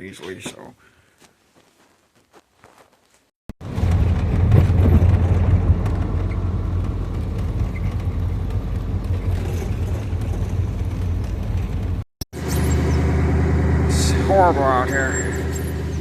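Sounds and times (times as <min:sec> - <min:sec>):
van driving rumble: 0:03.6 - 0:16.0.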